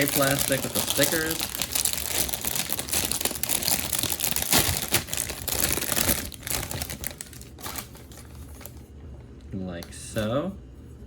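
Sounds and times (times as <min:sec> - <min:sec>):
plastic bags crinkling: 0:00.0 - 0:08.8.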